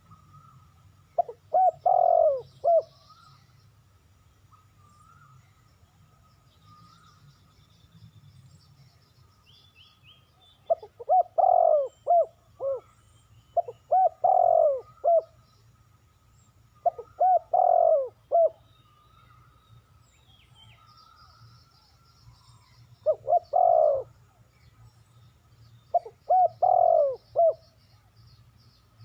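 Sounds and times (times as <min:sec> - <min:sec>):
small birds chirping: 0:00.0 - 0:29.0
dove cooing: 0:01.2 - 0:03.0, 0:10.7 - 0:12.9, 0:13.6 - 0:15.4, 0:16.8 - 0:18.6, 0:23.0 - 0:24.1, 0:25.9 - 0:27.6.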